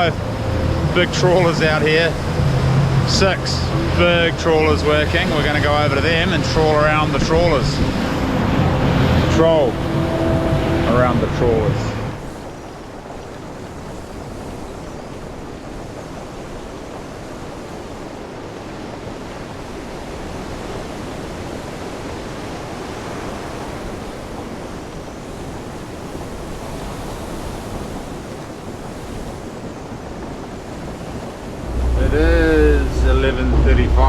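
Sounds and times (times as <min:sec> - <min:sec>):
wind rushing: 0:00.0 - 0:12.5, 0:31.4 - 0:34.0
sea water rushing around boat: 0:00.0 - 0:34.0.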